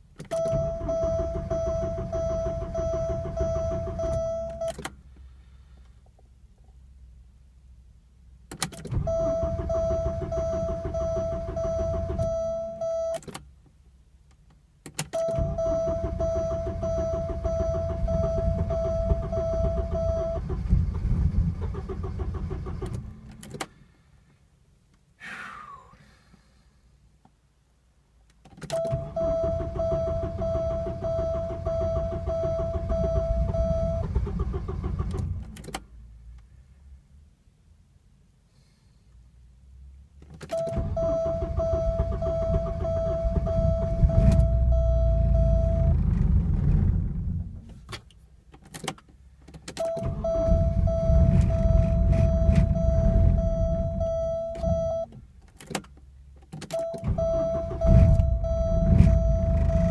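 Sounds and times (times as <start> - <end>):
car engine cranking on starter: 8.6 - 12.3, 15.0 - 23.8, 28.7 - 35.9, 40.4 - 59.9.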